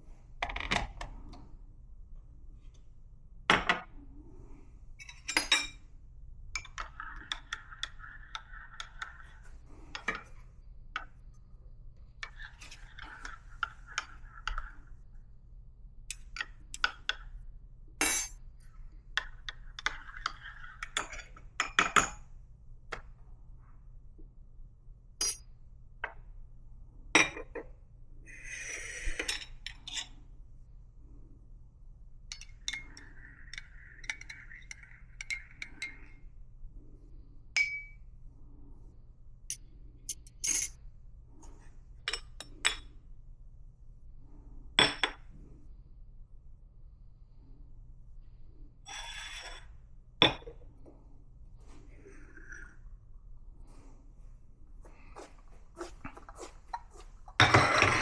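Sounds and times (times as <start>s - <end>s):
cups and equipment clinking: 40.1s - 40.8s, 55.2s - 58.0s.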